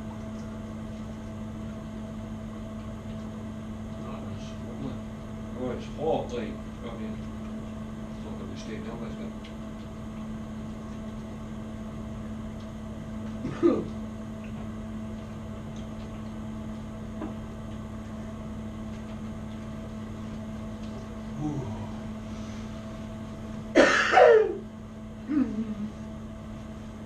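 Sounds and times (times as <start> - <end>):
low electrical hum: 0.0 - 27.0
man saying ooh: 21.4 - 22.0.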